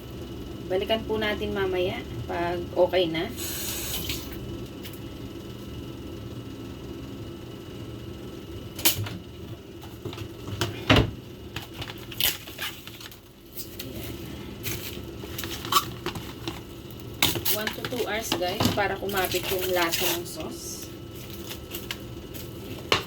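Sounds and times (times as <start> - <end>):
low steady hum: 0.0 - 23.0
kitchen things knocking and clicking: 17.2 - 20.0.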